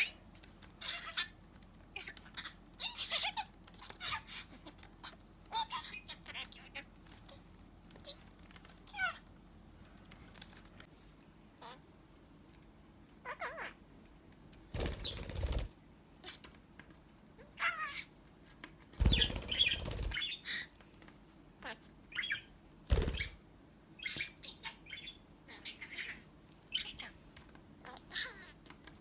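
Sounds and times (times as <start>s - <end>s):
wings flapping: 0.0s - 10.9s, 14.7s - 15.8s, 18.9s - 20.4s, 22.9s - 23.4s.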